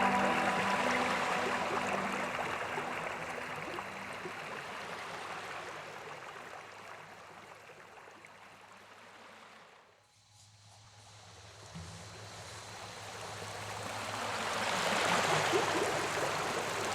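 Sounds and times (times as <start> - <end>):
waterfall rushing: 0.0 - 5.7.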